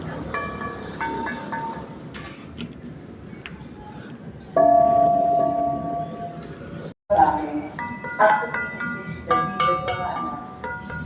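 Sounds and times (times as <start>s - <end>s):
church bell ringing: 4.6s - 6.1s, 7.7s - 11.0s.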